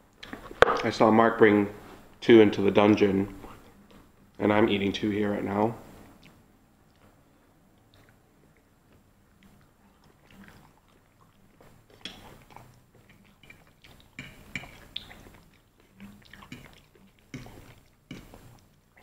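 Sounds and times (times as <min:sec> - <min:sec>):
wet mouth sounds: 0:03.3 - 0:04.4, 0:05.8 - 0:19.0
chewing fried chicken: 0:03.4 - 0:04.4, 0:06.0 - 0:19.0.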